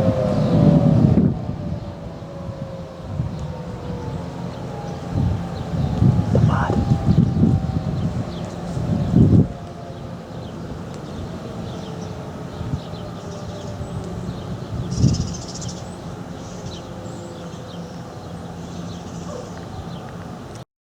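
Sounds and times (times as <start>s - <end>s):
distant siren winding down: 0.0s - 20.4s
small birds chirping: 3.4s - 9.2s, 9.8s - 20.2s.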